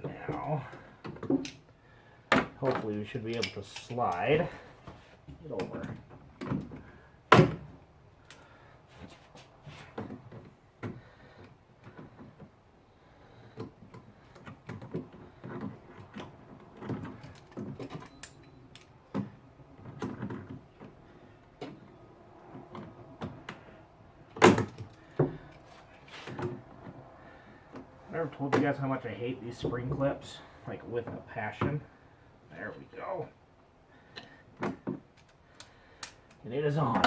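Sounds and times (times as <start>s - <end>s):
pliers and hose clamp clicking: 3.3s - 4.4s, 35.2s - 36.4s.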